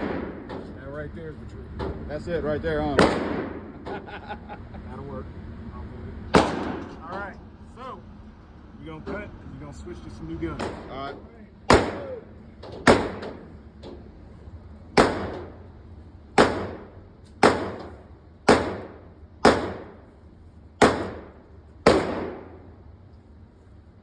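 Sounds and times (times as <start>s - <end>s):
gunshots echoing indoors: 0.0s - 0.5s, 3.0s - 3.8s, 6.4s - 7.0s, 11.7s - 12.2s, 15.0s - 15.6s, 16.4s - 20.0s, 20.8s - 22.7s.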